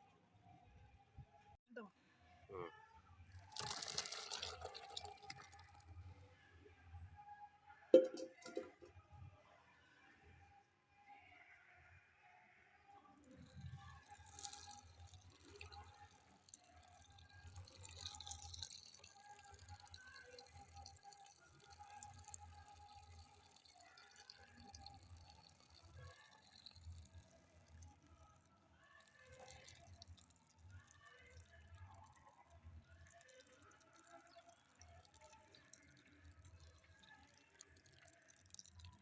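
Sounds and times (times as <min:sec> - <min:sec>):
faint liquid dripping: 0:03.3 - 0:06.3, 0:08.0 - 0:08.9, 0:13.3 - 0:39.0.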